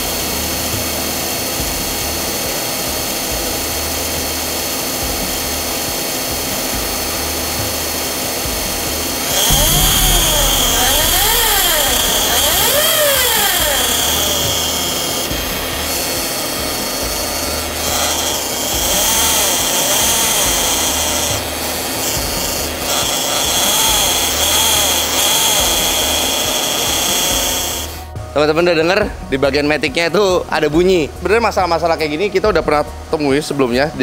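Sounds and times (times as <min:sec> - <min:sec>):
transmission whining: 0:09.4 - 0:14.8.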